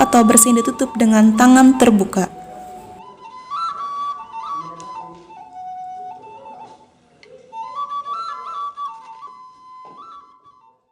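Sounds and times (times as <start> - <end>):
background music melody: 0.0 - 10.9.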